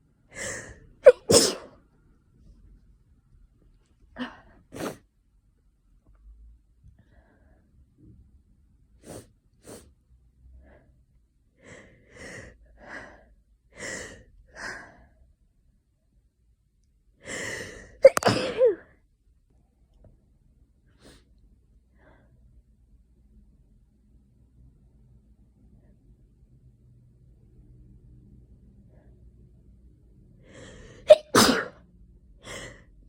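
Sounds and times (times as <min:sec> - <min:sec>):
person sneezing: 0:01.0 - 0:01.7, 0:04.8 - 0:05.0, 0:18.0 - 0:18.8, 0:31.1 - 0:31.8
person sniffing: 0:04.8 - 0:05.0, 0:18.0 - 0:18.7.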